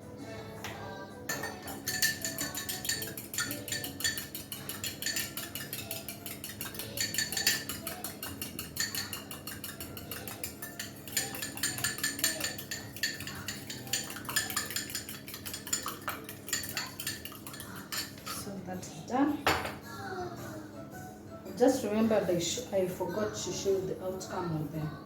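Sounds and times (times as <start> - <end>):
utensil clinking against bowl: 0.6 - 18.5.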